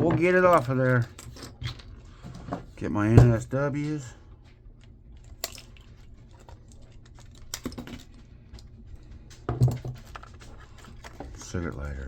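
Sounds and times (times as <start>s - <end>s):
tools and plastic parts clicking: 6.4s - 8.7s.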